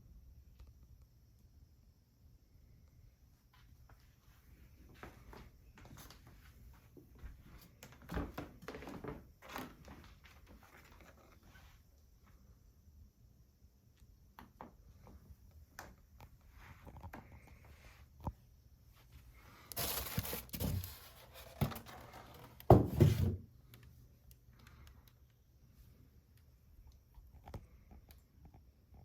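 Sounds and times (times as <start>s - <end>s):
packing material rustling: 19.7s - 22.6s.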